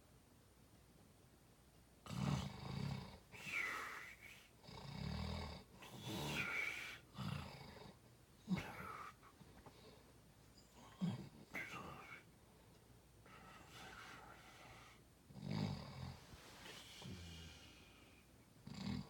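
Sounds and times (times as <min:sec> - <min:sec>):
man snoring: 0:02.1 - 0:09.2, 0:13.3 - 0:19.0.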